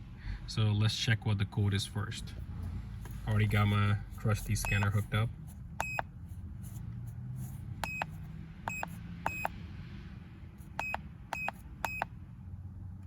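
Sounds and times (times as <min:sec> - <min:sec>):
steady low hum: 0:00.0 - 0:13.0
short electronic beeps: 0:04.6 - 0:05.0, 0:05.8 - 0:06.0, 0:07.8 - 0:09.6, 0:10.8 - 0:12.1.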